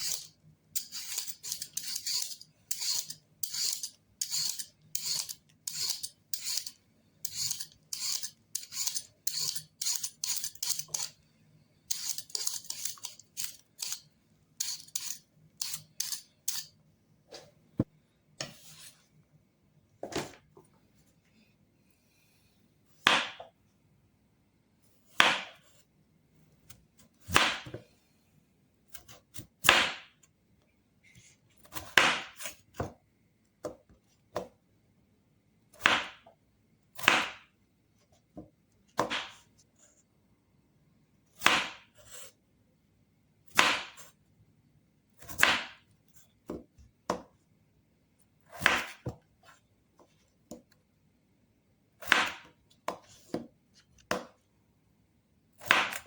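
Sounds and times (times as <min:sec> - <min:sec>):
knife chopping potatoes: 0:00.0 - 0:11.2, 0:11.9 - 0:16.7, 0:25.1 - 0:25.7, 0:26.7 - 0:27.8, 0:28.9 - 0:30.2, 0:31.6 - 0:33.0, 0:35.8 - 0:36.3, 0:37.0 - 0:37.5, 0:39.0 - 0:39.5, 0:41.4 - 0:42.3, 0:43.5 - 0:44.2, 0:45.2 - 0:45.8, 0:48.5 - 0:49.2, 0:52.0 - 0:54.4, 0:55.6 - 0:56.0.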